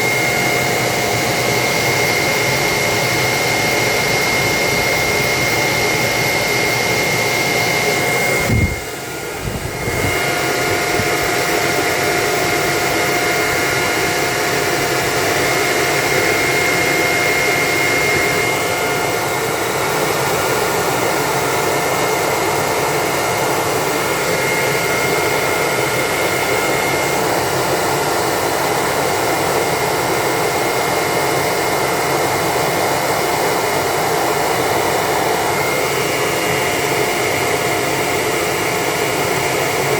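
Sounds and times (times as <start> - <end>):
thin steady whine: 0.0 - 39.9.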